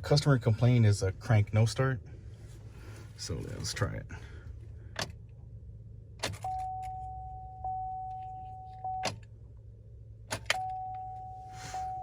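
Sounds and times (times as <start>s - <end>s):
dashboard warning chime dinging: 6.3s - 9.2s, 10.4s - 12.0s.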